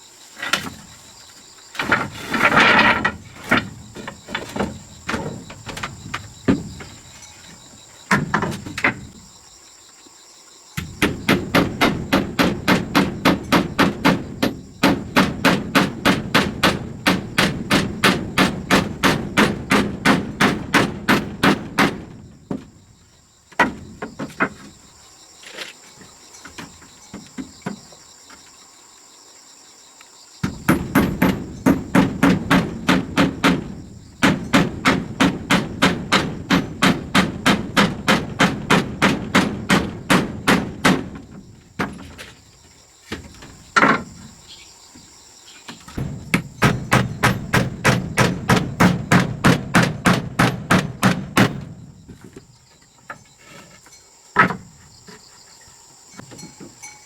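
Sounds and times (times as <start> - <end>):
scattered knocks: 1.8 - 7.1, 8.1 - 9.2, 10.8 - 22.9, 23.5 - 24.8, 30.4 - 42.3, 45.7 - 52.5
rapid hammer blows: 30.5 - 41.2, 46.0 - 51.7.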